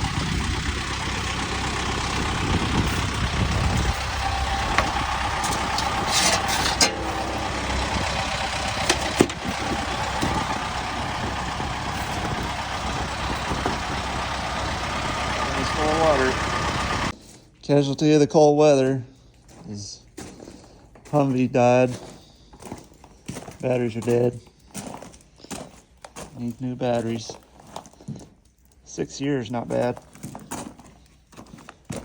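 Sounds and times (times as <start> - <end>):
engine idling: 0.0 - 17.2
sharp clicks or knocks: 3.8 - 10.6.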